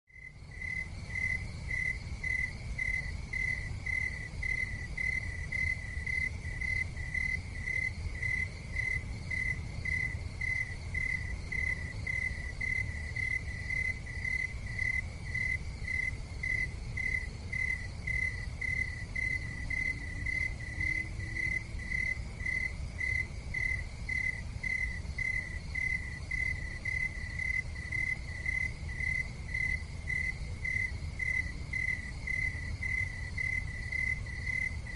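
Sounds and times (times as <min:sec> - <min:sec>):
cricket chirping: 0:00.1 - 0:34.9.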